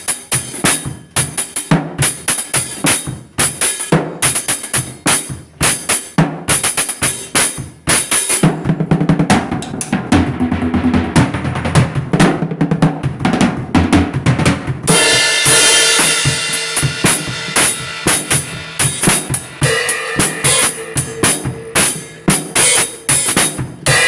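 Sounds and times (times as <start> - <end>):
fast drum kit playing: 0.0 - 24.0
ringing cymbals: 14.9 - 24.0.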